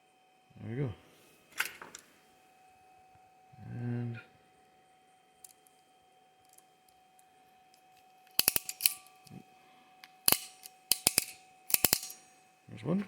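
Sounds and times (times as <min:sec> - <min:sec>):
crimping tool clicking: 0:08.4 - 0:09.1, 0:10.3 - 0:12.2.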